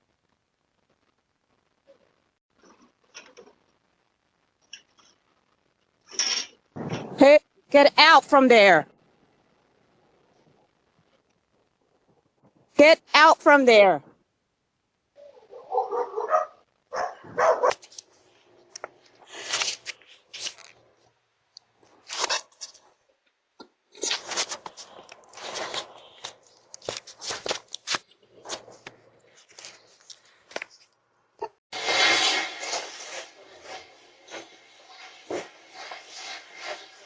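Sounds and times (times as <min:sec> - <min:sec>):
dog barking: 0:15.2 - 0:17.8
rustling and scraping: 0:17.0 - 0:21.2, 0:21.8 - 0:23.0, 0:23.9 - 0:30.9, 0:31.8 - 0:37.0.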